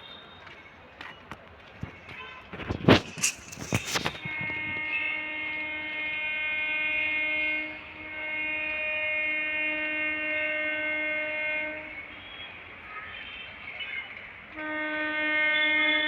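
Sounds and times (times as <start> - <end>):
rail noise: 0.0 - 16.0
electric train horn blasts: 3.2 - 12.6, 14.5 - 16.0.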